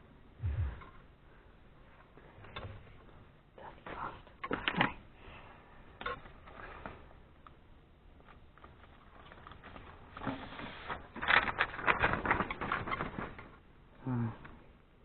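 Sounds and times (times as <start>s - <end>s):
short low rumble: 0.4s - 1.0s.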